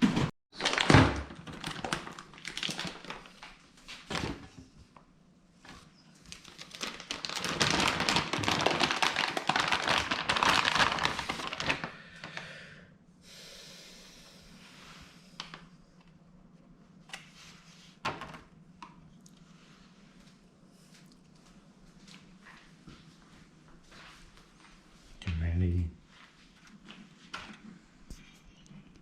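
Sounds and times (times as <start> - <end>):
packaging rustling and crinkling: 0.6 - 4.6, 5.6 - 12.4
faint hiss: 13.2 - 15.6.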